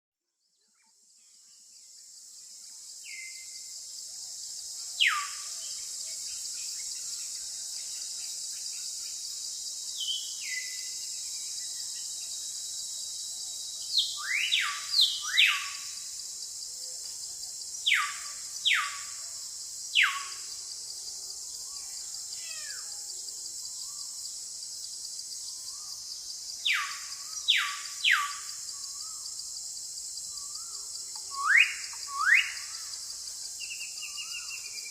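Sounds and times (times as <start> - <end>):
high-pitched insect chorus: 0.5 - 34.9
bird whistled calls: 14.0 - 15.8, 31.3 - 32.7.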